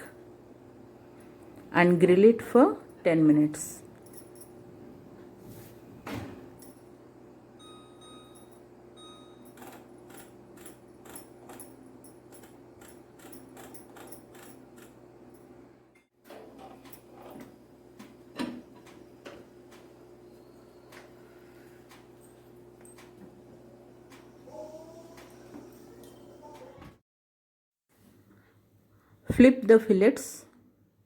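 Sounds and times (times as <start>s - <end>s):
microwave beeps: 7.6s - 9.6s.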